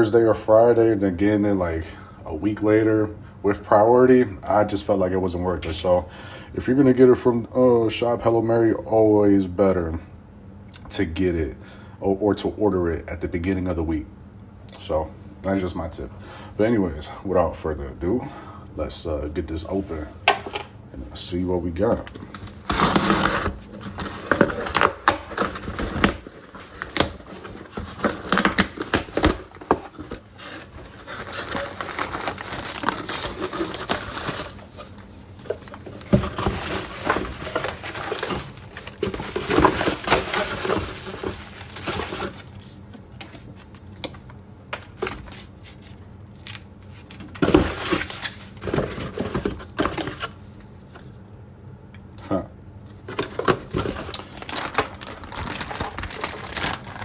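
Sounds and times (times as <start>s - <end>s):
packaging tearing and crinkling: 22.0s - 43.9s, 53.1s - 57.0s.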